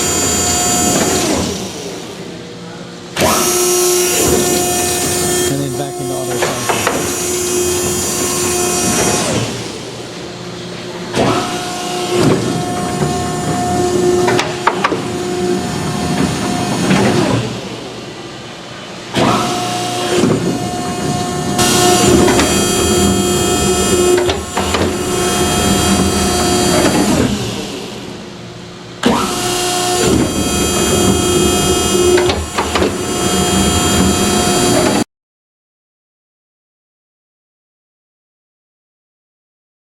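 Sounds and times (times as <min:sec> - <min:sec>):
hydraulic power pack whining: 0:03.2 - 0:10.0, 0:19.1 - 0:35.0.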